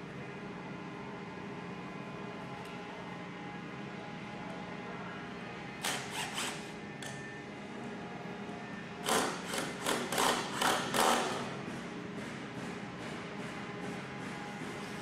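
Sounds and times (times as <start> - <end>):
steady background hum: 0.0 - 15.0.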